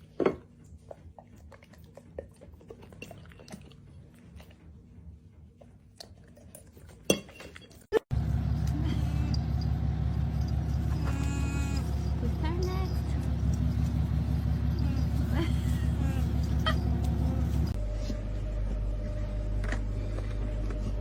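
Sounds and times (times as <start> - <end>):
loud motor hum: 8.1 - 21.0.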